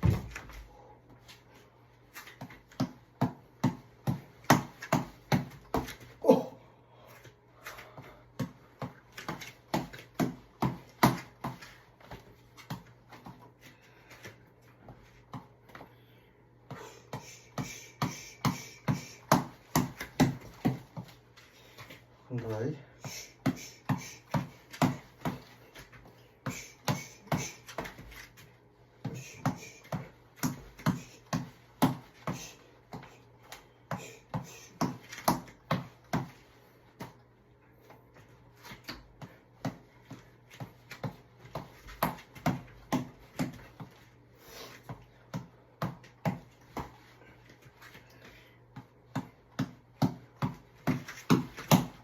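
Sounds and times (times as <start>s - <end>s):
reflex ball being punched: 2.4s - 6.1s, 8.3s - 13.2s, 16.7s - 21.1s, 23.0s - 25.5s, 29.0s - 33.2s, 33.9s - 36.4s, 38.8s - 44.0s, 48.7s - 52.0s.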